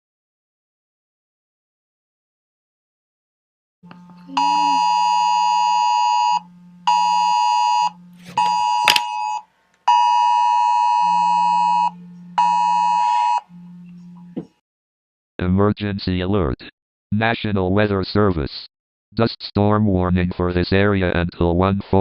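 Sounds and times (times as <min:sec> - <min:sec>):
phone vibration buzz: 0:03.8 - 0:14.6
two-tone alert blare: 0:04.3 - 0:14.2
sharp click: 0:08.3 - 0:09.2.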